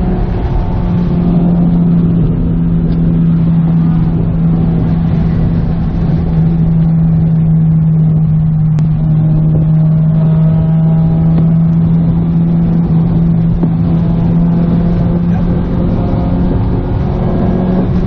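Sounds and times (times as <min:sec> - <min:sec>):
car engine droning: 0:00.0 - 0:18.0
road rumble: 0:00.0 - 0:18.0.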